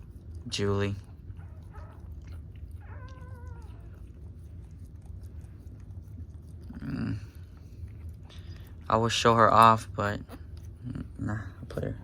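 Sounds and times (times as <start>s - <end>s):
puppy whining: 1.0s - 8.9s.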